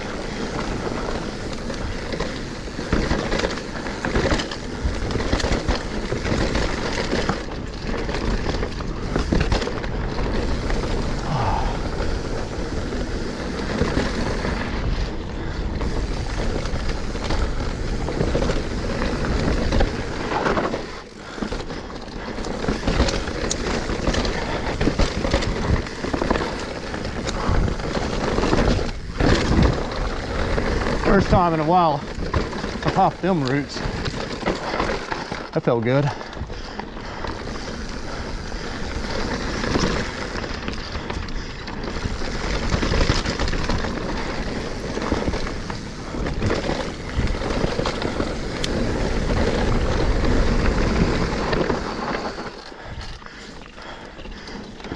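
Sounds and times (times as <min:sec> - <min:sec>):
bike rattling and clacking: 0:00.0 - 0:54.9
tyres on loose dirt: 0:00.0 - 0:54.9
wind rushing over microphone: 0:08.2 - 0:20.7.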